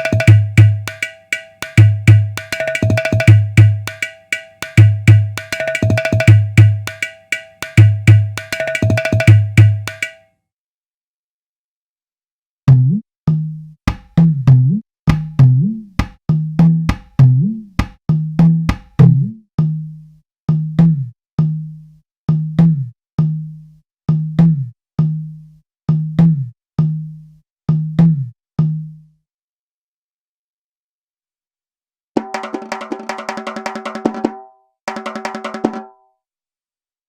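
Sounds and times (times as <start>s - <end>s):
hand drum strokes: 0.0s - 10.2s.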